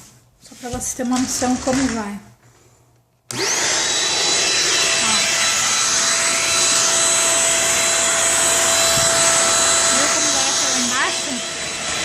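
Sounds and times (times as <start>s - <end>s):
vacuum cleaner running: 3.3s - 12.0s.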